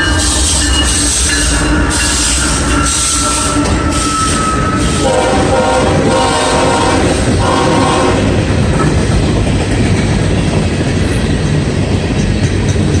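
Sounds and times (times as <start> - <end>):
train cars rumbling and clattering: 0.0 - 13.0
train horn chord blasts: 4.8 - 8.6.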